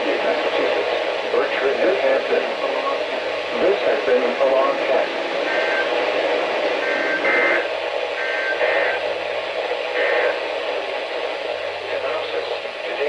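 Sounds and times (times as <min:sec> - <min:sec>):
radio hiss: 0:00.0 - 0:13.0
screechy digital data bursts: 0:05.5 - 0:05.9.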